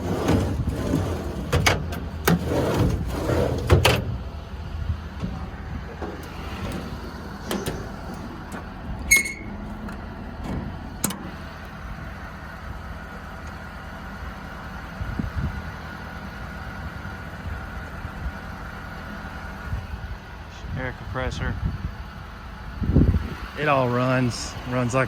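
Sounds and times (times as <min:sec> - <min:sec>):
diesel truck engine idling: 0:00.0 - 0:25.0
metal clanks and clicks: 0:05.2 - 0:11.4.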